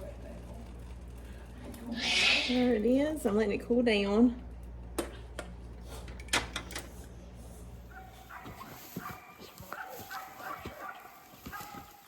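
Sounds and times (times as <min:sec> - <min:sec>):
animal whining: 0:02.0 - 0:02.8.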